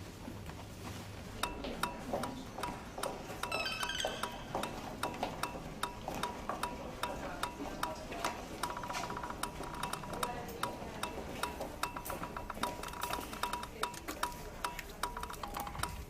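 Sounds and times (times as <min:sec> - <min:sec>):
electronic beeps with clicks: 0:03.4 - 0:06.0
higher beeping figure: 0:03.5 - 0:04.6.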